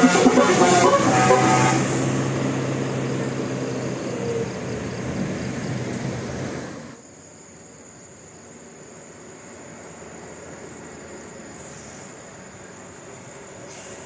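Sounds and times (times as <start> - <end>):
passing vehicles rushing: 0.0 - 7.0.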